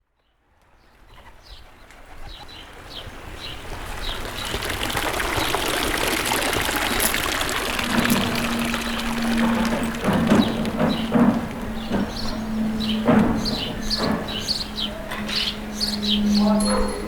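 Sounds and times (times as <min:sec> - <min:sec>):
running water: 0:02.6 - 0:17.0
bird chirping: 0:08.4 - 0:17.0
low held tone: 0:11.7 - 0:17.0.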